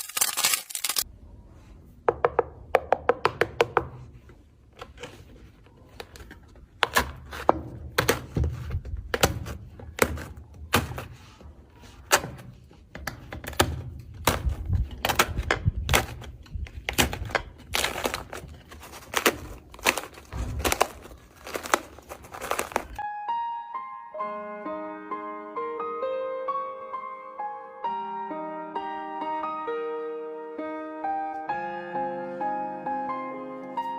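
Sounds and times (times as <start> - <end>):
slime squelching: 15.9 - 23.0.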